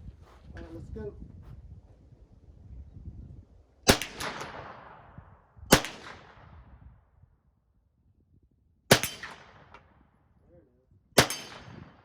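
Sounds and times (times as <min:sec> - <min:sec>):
carbine gunshots: 0:03.9 - 0:05.1, 0:05.7 - 0:06.5, 0:08.9 - 0:09.9, 0:11.2 - 0:12.0.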